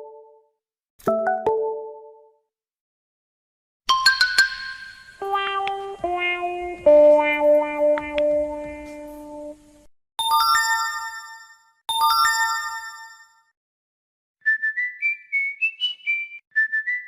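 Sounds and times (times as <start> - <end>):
whistled notification tune: 14.4 - 17.0.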